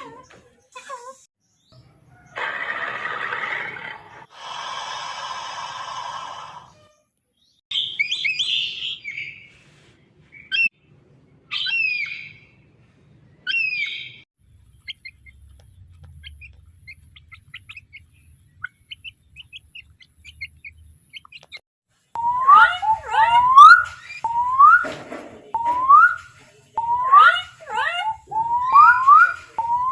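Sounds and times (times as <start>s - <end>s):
birds calling: 13.4s - 21.6s, 26.8s - 29.9s.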